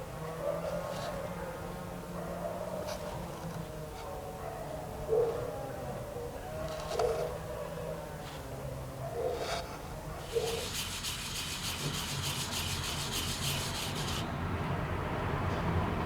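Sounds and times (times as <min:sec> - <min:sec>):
rasping scraping of metal coin: 0:10.2 - 0:14.3.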